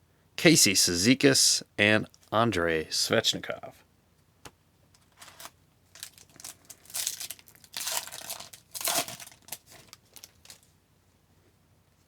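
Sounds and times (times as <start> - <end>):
foil wrapper crinkling and tearing: 5.0 - 10.7.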